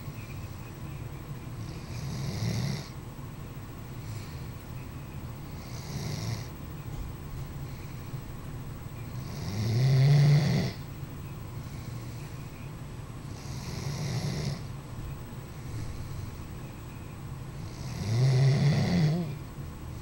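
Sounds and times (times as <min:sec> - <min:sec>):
dog snoring: 0:01.6 - 0:03.0, 0:05.5 - 0:06.5, 0:09.1 - 0:10.9, 0:13.2 - 0:14.7, 0:17.6 - 0:19.4
low rumble of breathing: 0:02.8 - 0:09.3, 0:10.7 - 0:13.4, 0:14.6 - 0:17.7.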